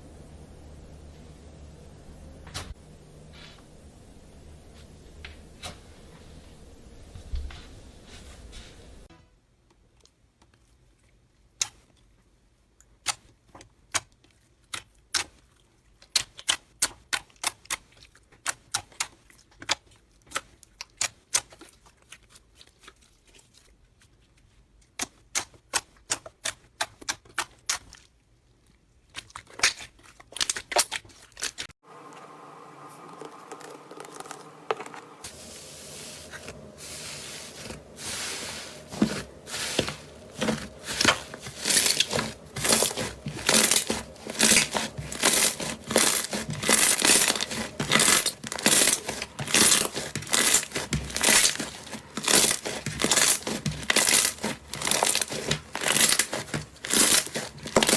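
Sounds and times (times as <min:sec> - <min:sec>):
crunchy slime crackling: 0:33.2 - 0:57.9.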